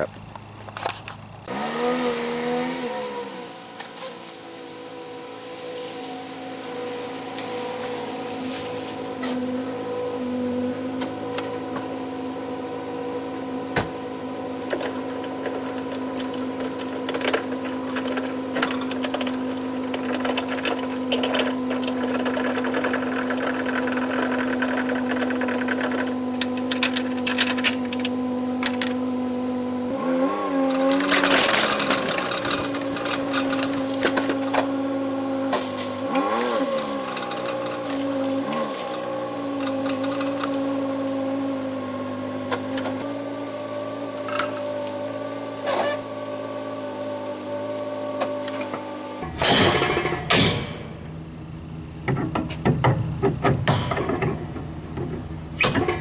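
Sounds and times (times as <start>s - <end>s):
small motor humming: 1.4s - 49.3s
clicks and rattles: 14.7s - 29.0s, 30.8s - 34.7s, 36.9s - 39.0s, 39.6s - 40.7s.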